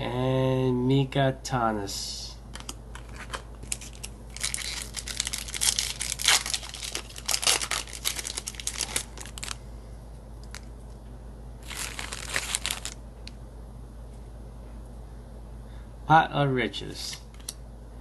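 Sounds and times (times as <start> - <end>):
plastic wrapper crinkling and tearing: 2.6 - 9.6, 10.4 - 10.7, 11.6 - 13.0.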